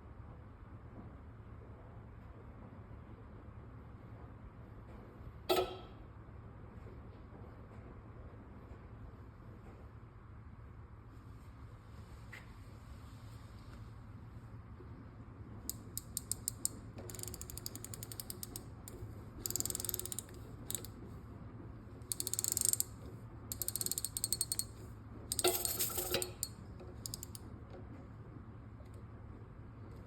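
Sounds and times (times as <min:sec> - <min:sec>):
radiator ticking and clicking: 0:15.7 - 0:20.9, 0:22.1 - 0:22.9, 0:23.5 - 0:24.7, 0:26.3 - 0:27.4.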